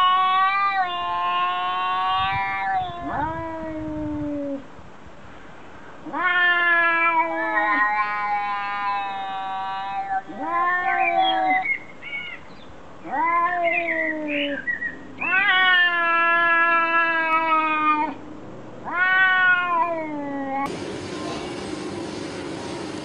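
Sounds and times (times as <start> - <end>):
cat meowing: 0.0 - 4.6, 6.0 - 11.7, 13.0 - 18.2, 18.8 - 20.7
steady background noise: 0.0 - 23.0.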